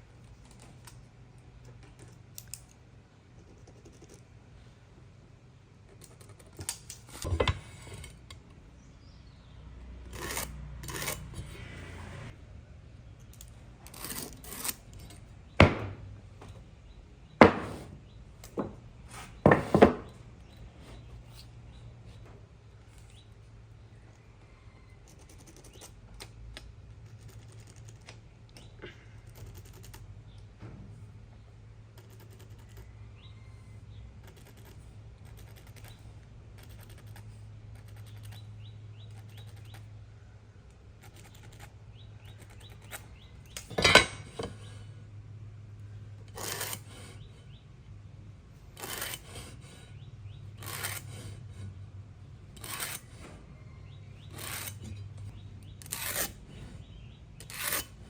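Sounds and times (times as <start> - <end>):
loud sharp knock on wood: 15.6 - 16.0.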